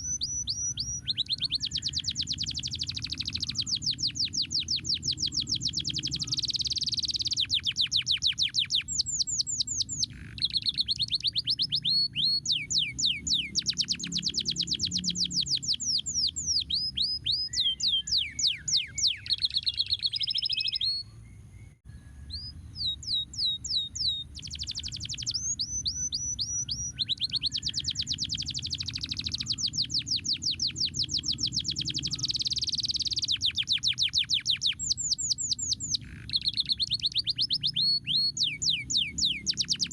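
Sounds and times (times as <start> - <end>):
canary singing in rapid trills: 0.0 - 39.9
low background rumble: 8.9 - 33.1.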